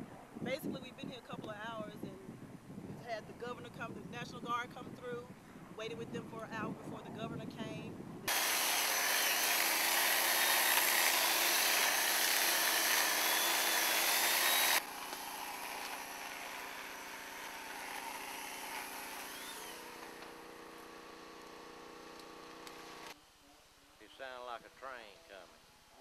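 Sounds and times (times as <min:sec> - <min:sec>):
held tones: 0:08.3 - 0:23.2
loud hissing mechanical noise: 0:08.3 - 0:23.2.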